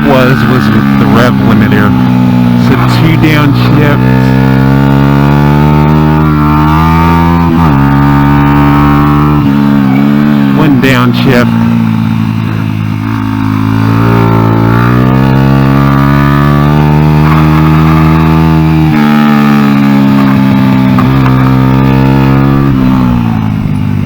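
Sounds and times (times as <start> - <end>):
minibike engine revving: 0.0 - 24.0.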